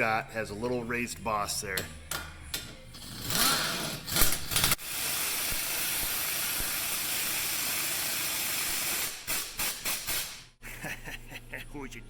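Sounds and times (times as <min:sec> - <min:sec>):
pneumatic air tool hissing: 0:03.5 - 0:10.5.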